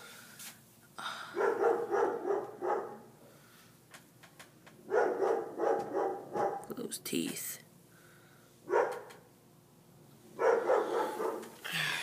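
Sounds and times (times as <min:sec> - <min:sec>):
dog barking: 0:01.4 - 0:03.1, 0:04.9 - 0:06.7, 0:08.7 - 0:09.2, 0:10.4 - 0:11.5.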